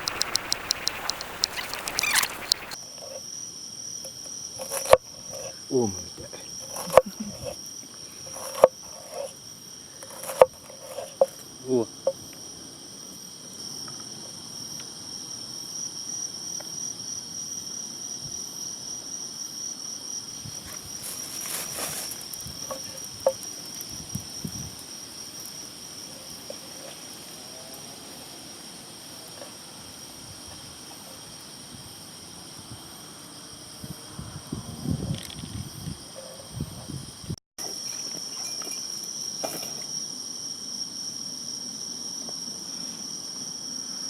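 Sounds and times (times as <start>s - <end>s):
sharp click: 0.0s - 2.8s
insects chirping: 0.0s - 44.0s.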